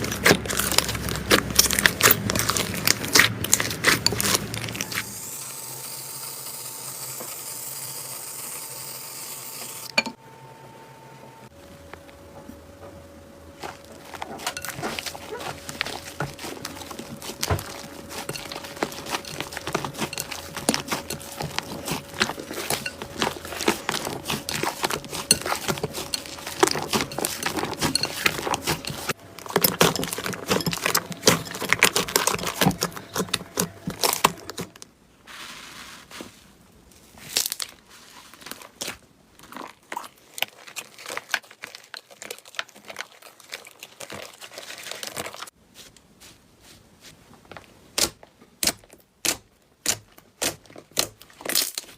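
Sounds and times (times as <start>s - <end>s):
slime crackling and popping: 0.0s - 5.1s, 14.2s - 34.8s.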